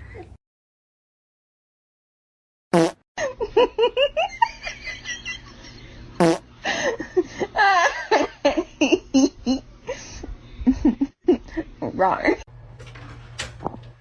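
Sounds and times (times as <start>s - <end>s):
loud fart-like blasts: 2.8s - 3.0s.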